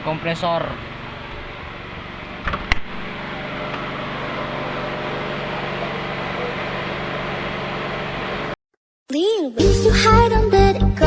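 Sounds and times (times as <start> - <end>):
compressor running: 0.0 - 8.6.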